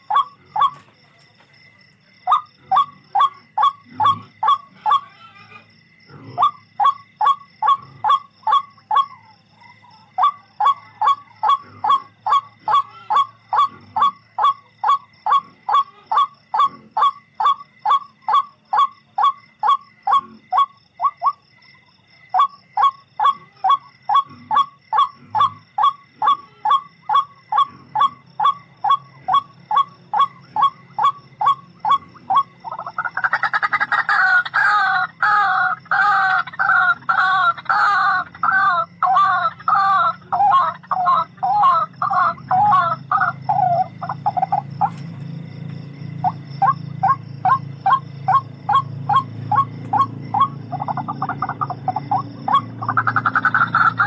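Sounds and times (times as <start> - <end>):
fuller bird call: 0.0 - 0.9, 2.2 - 5.7, 6.4 - 21.4, 22.3 - 45.3, 46.1 - 54.0.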